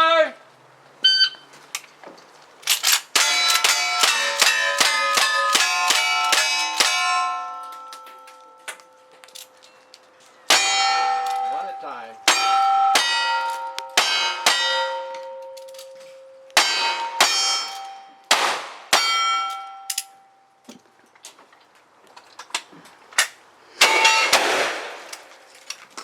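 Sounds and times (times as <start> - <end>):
steel plate clanging and ringing: 3.2 - 18.3, 18.9 - 20.6, 23.8 - 24.4
gunshots: 16.6 - 19.2, 23.8 - 25.3.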